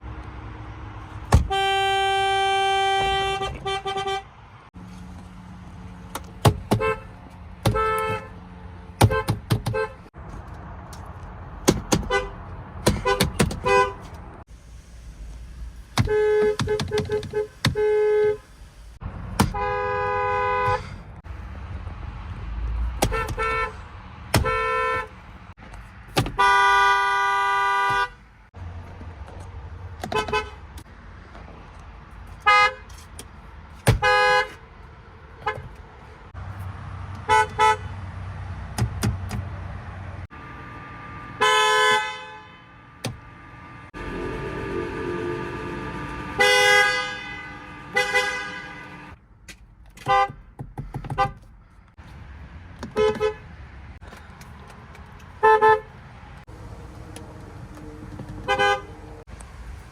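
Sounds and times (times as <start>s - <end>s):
car horns honking: 1.2s - 4.4s, 6.4s - 10.2s, 11.8s - 14.4s, 16.0s - 18.5s, 19.4s - 21.0s, 23.0s - 25.2s, 26.2s - 28.2s, 30.0s - 30.8s, 32.4s - 33.0s, 33.8s - 34.6s, 35.4s - 35.8s, 37.2s - 38.0s, 40.2s - 49.2s, 50.0s - 50.5s, 52.9s - 53.5s, 55.3s - 59.3s.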